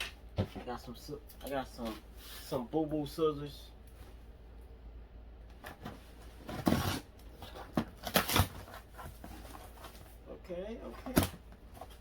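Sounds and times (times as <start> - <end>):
scissors cutting packing tape: 8.0 - 8.6.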